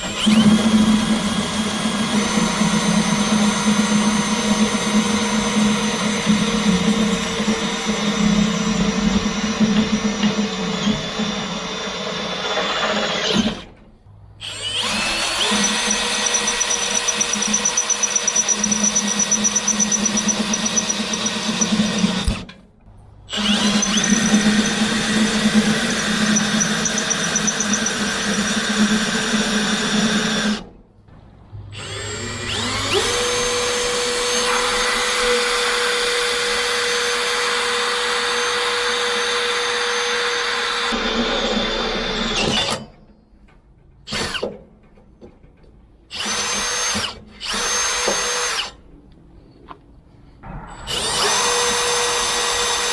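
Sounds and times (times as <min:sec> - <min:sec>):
power drill running: 0:00.0 - 0:13.8, 0:14.4 - 0:22.5, 0:23.3 - 0:30.7, 0:31.8 - 0:42.9, 0:44.1 - 0:44.5, 0:46.1 - 0:48.8, 0:50.9 - 0:52.9.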